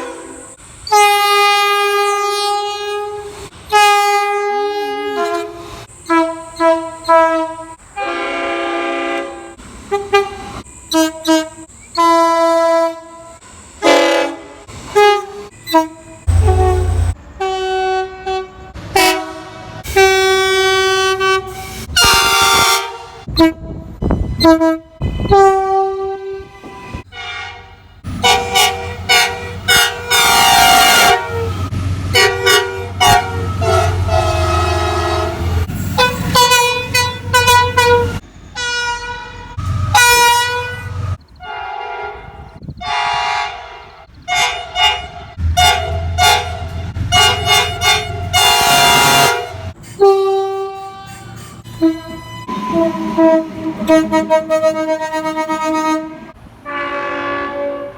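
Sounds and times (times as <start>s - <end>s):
train horns blasting: 0.0s - 57.9s
low rumble: 16.3s - 17.2s.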